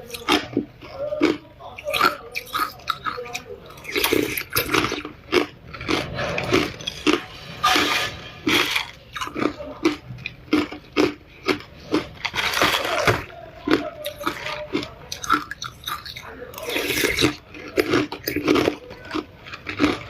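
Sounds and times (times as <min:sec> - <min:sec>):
ice being chewed: 0:00.0 - 0:20.0.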